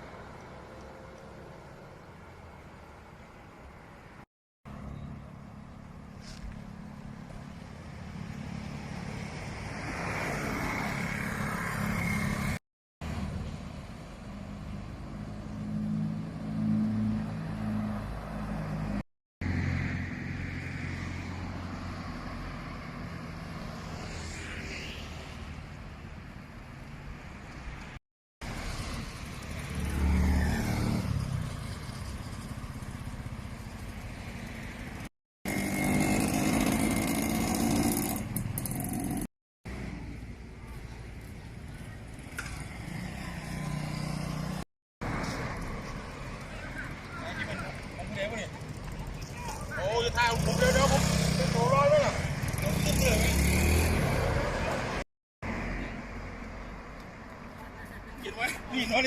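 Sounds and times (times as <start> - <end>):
vehicles driving past: 0.0 - 59.0
heavy vehicle passing: 28.5 - 33.2.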